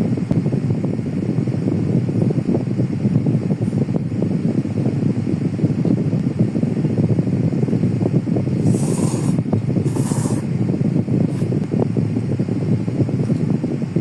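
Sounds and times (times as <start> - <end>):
low rumbling noise: 0.0 - 14.0
short hissing bursts: 8.6 - 10.5.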